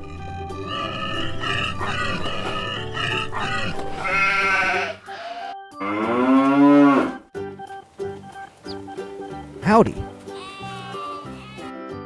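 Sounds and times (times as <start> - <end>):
cow mooing: 0.0 - 7.2
light background music: 0.0 - 12.0
sheep bleating: 0.5 - 7.2, 10.0 - 12.0.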